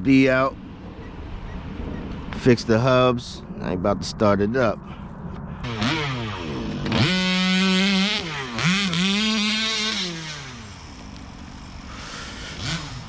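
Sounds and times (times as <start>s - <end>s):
small two-stroke engine revving: 5.6s - 13.0s.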